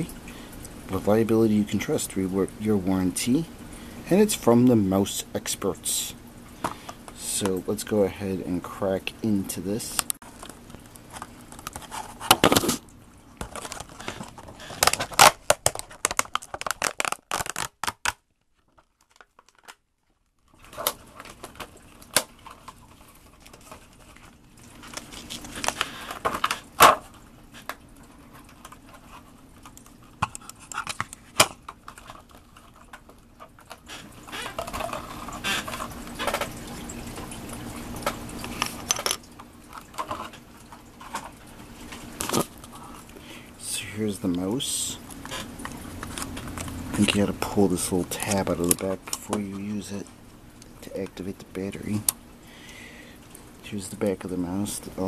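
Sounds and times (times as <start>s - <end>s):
packaging being torn open: 13.4s - 19.8s, 24.8s - 27.0s.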